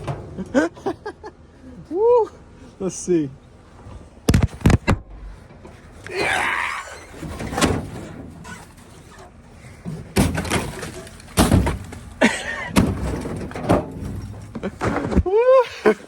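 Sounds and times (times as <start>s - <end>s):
scraping: 3.8s - 15.2s.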